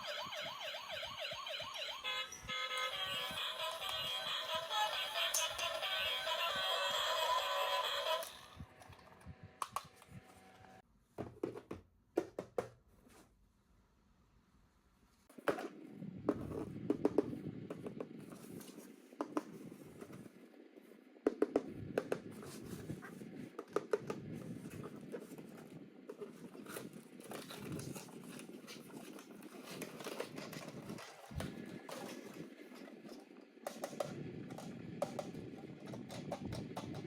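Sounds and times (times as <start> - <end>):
toys and packaging handled: 0.0 - 9.8, 22.3 - 34.1.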